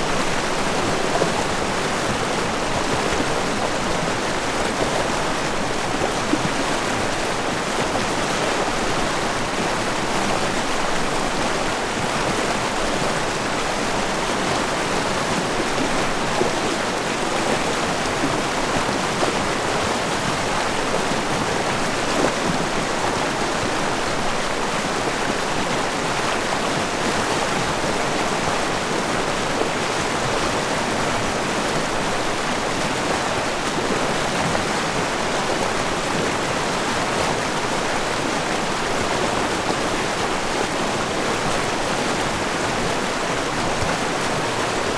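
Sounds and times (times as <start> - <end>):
river water rushing: 0.0 - 44.9.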